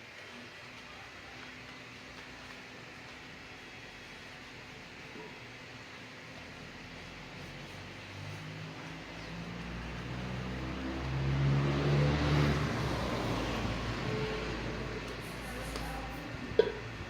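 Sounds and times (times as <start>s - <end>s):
car engine driving past: 7.8s - 15.5s.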